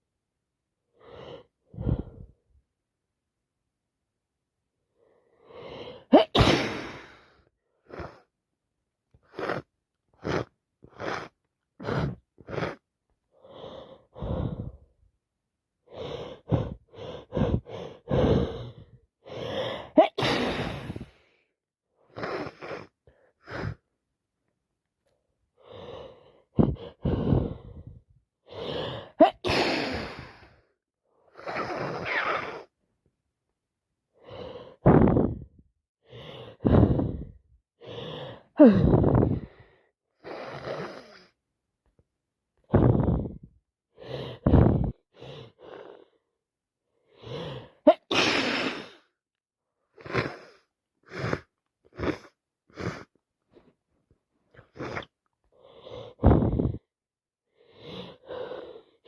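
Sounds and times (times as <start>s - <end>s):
sniffs and gasping in-breaths: 1.0s - 2.4s, 9.2s - 15.0s, 15.9s - 24.0s, 25.6s - 32.7s, 34.2s - 41.4s, 42.6s - 46.3s, 47.0s - 49.2s, 49.8s - 53.7s, 54.5s - 56.9s, 57.5s - 59.0s
woman sneezing: 6.1s - 7.1s, 19.9s - 21.0s, 29.2s - 30.2s, 47.9s - 48.9s.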